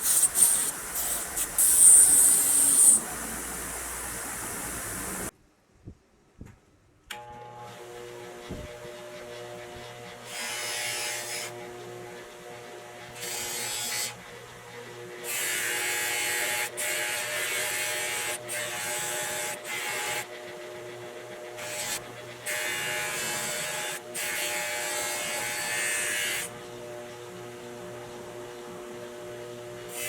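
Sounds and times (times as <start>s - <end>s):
loud bursts of hissing: 0.0s - 5.3s
small electric motor humming: 0.0s - 5.3s.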